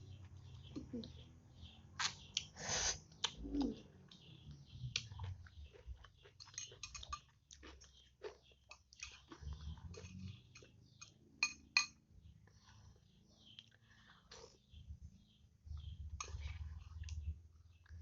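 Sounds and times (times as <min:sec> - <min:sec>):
wet chewing with mouth clicks: 0:02.0 - 0:11.0, 0:15.8 - 0:18.0.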